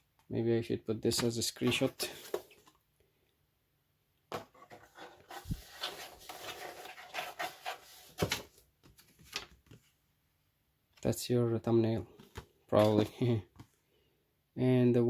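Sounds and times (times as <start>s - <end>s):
paper rustling: 4.5s - 9.9s.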